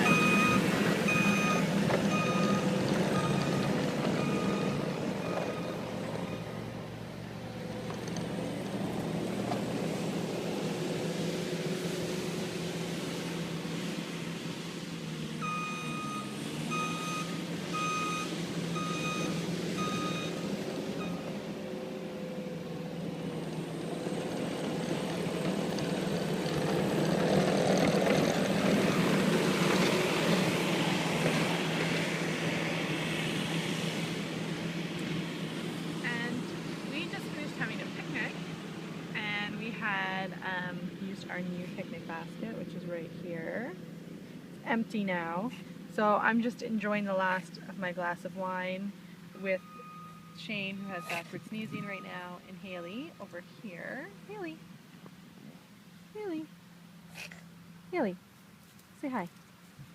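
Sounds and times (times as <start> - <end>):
reversing alarm beeping: 0.0 - 6.6, 15.4 - 21.3, 49.6 - 52.4
skid steer engine running: 0.0 - 37.9.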